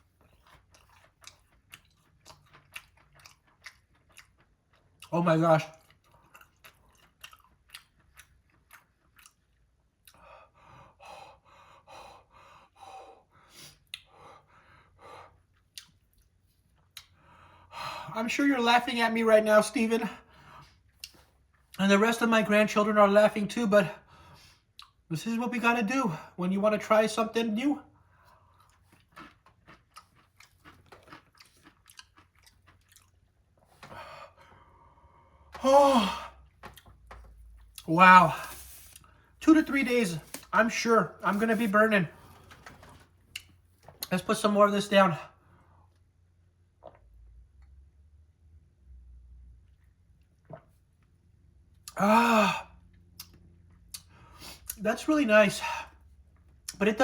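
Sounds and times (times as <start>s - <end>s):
person chewing: 0.0s - 10.3s, 15.4s - 17.2s, 20.6s - 21.8s, 24.6s - 25.1s, 28.2s - 39.4s, 40.1s - 40.6s, 43.2s - 44.1s, 51.8s - 54.8s.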